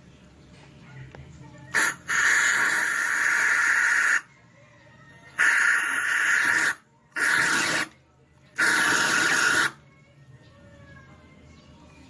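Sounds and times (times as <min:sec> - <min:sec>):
hissing bursts: 0:01.8 - 0:04.2, 0:05.4 - 0:08.0, 0:08.6 - 0:09.8.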